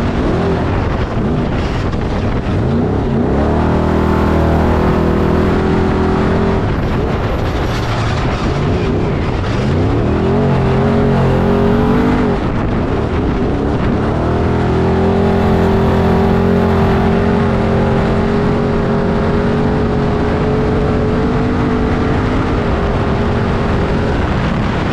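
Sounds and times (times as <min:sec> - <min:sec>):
engine revving hard: 0:02.6 - 0:12.8, 0:13.8 - 0:21.6.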